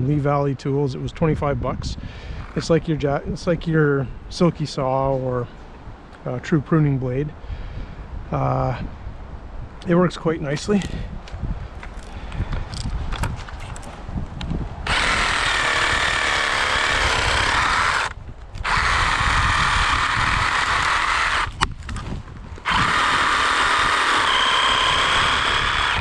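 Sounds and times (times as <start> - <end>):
wind rumble on microphone: 0.0 - 26.0
reciprocating saw cutting wood: 14.8 - 22.0, 22.6 - 26.0.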